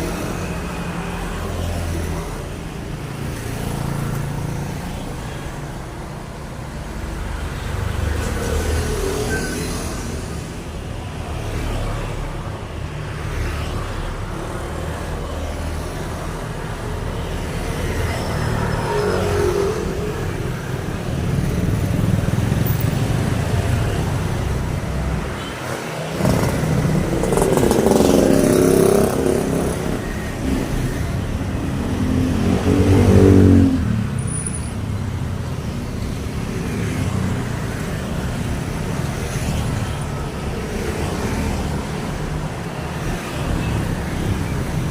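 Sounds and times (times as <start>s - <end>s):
motor vehicles passing: 5.9s - 44.9s.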